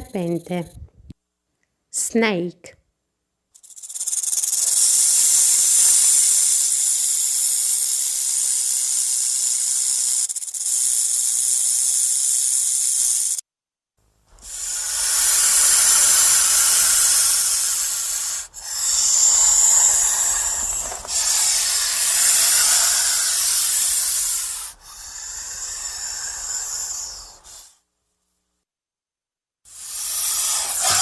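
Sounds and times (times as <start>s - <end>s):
snake hissing: 3.6s - 13.4s, 14.3s - 27.9s, 29.7s - 31.0s.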